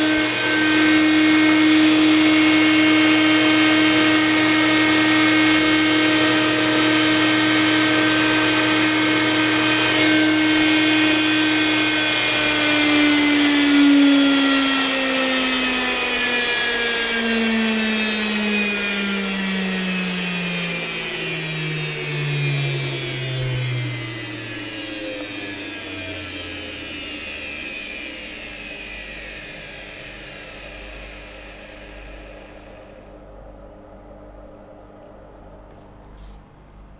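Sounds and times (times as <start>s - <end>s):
washing machine motor whining: 0.0s - 34.4s.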